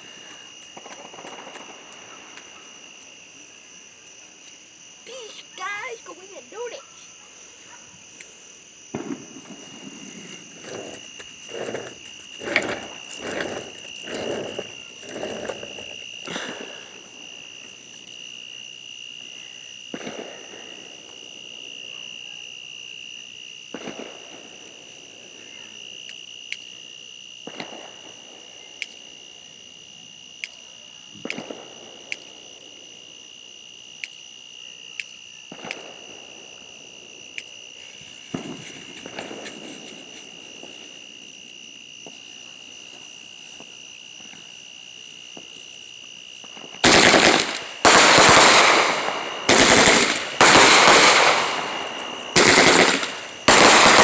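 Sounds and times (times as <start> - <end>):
night insects trilling: 0.0 - 54.0
sharp pops: 46.5 - 54.0.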